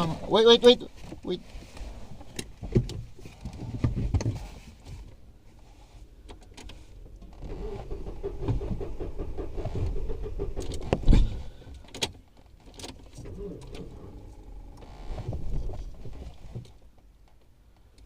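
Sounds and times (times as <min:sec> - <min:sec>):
starter motor cranking: 0:07.2 - 0:11.8.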